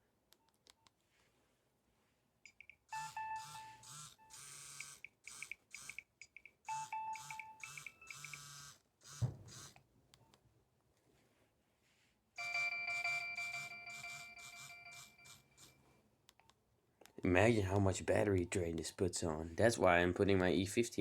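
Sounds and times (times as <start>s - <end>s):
mobile phone beeping melody: 2.5s - 8.7s, 12.4s - 15.7s
phone vibration buzz: 2.9s - 6.1s, 6.7s - 9.8s, 12.4s - 15.8s
thump: 9.2s - 9.5s.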